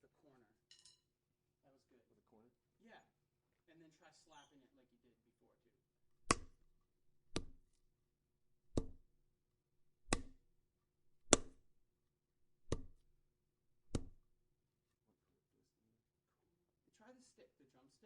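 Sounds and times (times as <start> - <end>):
sharp blows on foley prop: 6.2 - 6.6, 8.7 - 9.0, 10.0 - 10.4, 11.2 - 11.6, 12.7 - 13.0, 13.9 - 14.2.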